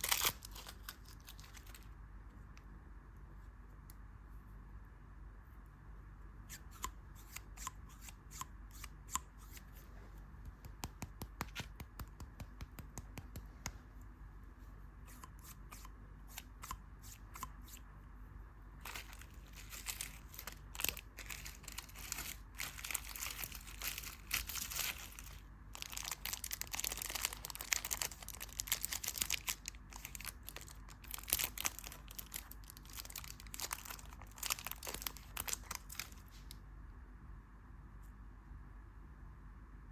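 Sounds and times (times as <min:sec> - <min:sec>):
candy wrapper crinkling: 0:00.0 - 0:02.0, 0:18.8 - 0:36.6.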